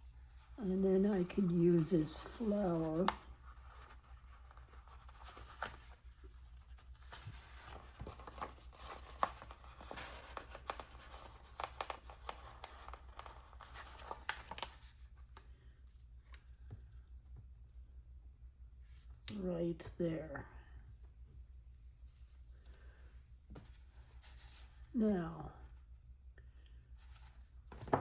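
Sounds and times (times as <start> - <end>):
paper rustling and crinkling: 0.0 - 15.5, 27.0 - 28.0.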